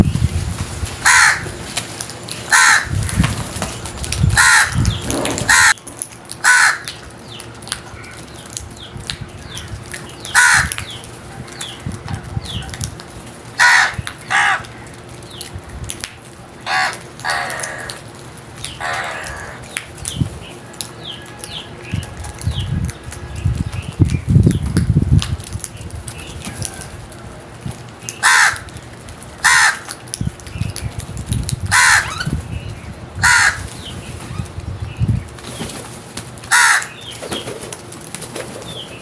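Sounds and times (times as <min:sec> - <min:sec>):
crows cawing: 0:01.0 - 0:01.6, 0:02.5 - 0:03.1, 0:04.4 - 0:05.8, 0:06.4 - 0:07.0, 0:10.3 - 0:10.9, 0:13.6 - 0:14.8, 0:16.6 - 0:18.1, 0:18.7 - 0:19.8, 0:28.2 - 0:28.7, 0:29.4 - 0:30.0, 0:31.7 - 0:32.3, 0:33.2 - 0:33.7, 0:36.5 - 0:37.1.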